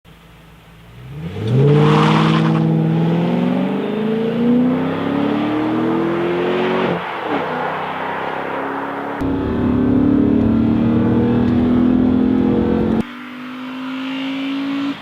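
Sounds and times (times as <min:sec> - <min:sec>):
vee eight engine revving: 0:01.0 - 0:07.8, 0:09.1 - 0:13.0.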